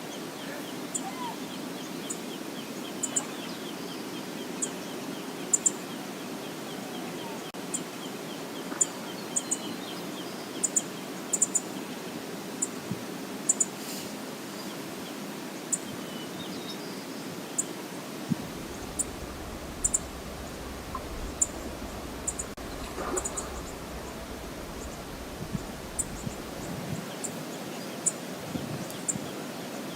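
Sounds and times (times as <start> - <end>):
waterfall rushing: 18.1 - 27.5
low rumble: 18.3 - 27.0.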